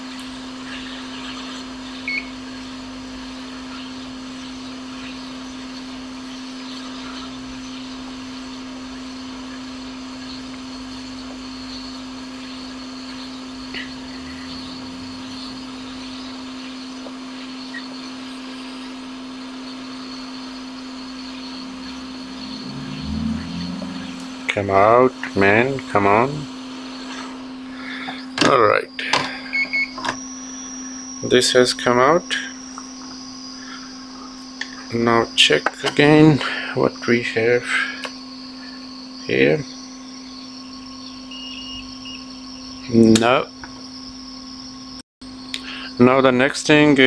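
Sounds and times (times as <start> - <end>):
hot air blower whirring: 11.0 - 34.9.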